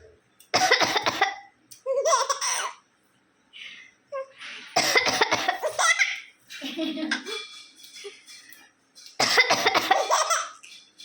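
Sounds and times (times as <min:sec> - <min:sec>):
baby laughing: 0:01.9 - 0:02.8, 0:05.5 - 0:08.2, 0:09.6 - 0:10.6
person coughing: 0:04.8 - 0:05.8, 0:09.2 - 0:10.2.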